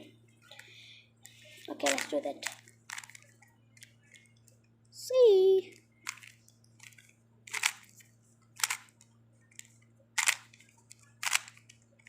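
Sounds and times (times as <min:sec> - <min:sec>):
plastic cube faces clacking: 0:08.6 - 0:09.0, 0:09.6 - 0:11.8.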